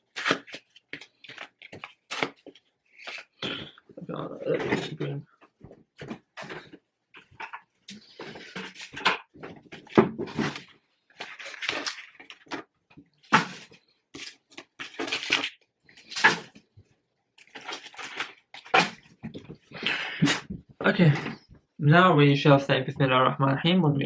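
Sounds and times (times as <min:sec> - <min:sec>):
cardboard and paper tearing: 0:00.0 - 0:03.4, 0:11.2 - 0:12.5, 0:13.3 - 0:16.5
packaging rustling and crinkling: 0:00.0 - 0:03.4, 0:05.5 - 0:12.7, 0:13.3 - 0:16.8, 0:17.4 - 0:19.8.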